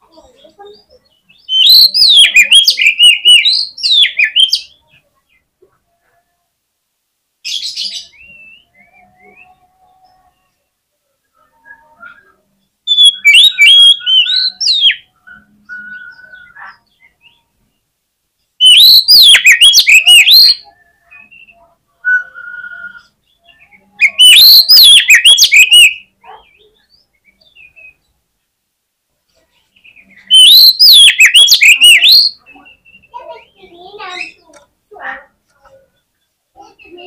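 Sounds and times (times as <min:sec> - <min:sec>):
bird singing whistled notes: 0:01.3 - 0:04.7, 0:07.5 - 0:10.5, 0:11.4 - 0:17.5, 0:18.6 - 0:28.1, 0:29.9 - 0:34.4.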